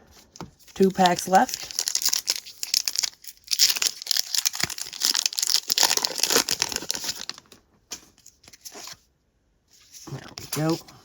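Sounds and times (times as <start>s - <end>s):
foil wrapper crinkling: 0.6s - 7.6s
card pack being torn open: 0.8s - 7.4s.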